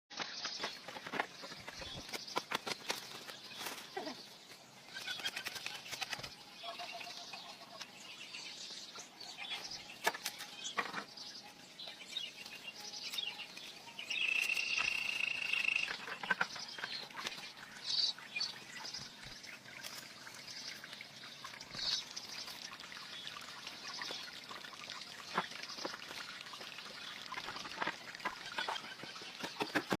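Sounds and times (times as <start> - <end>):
birds chirping: 0.2 - 30.0
high bird trill: 14.0 - 16.0.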